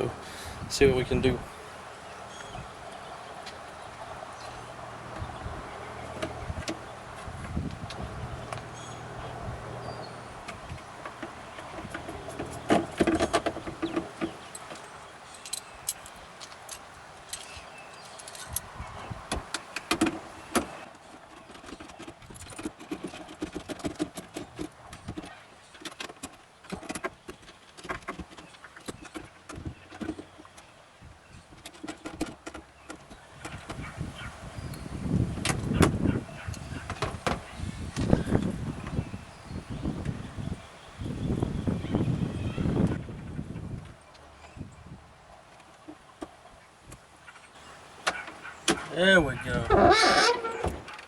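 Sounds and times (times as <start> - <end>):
metal clicks and clinks: 11.8 - 18.8
thumps: 48.0 - 51.0.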